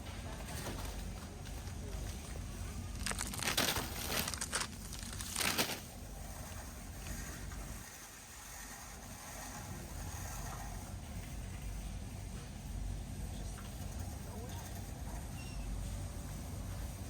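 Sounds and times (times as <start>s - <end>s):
rustling: 0.5s - 7.2s.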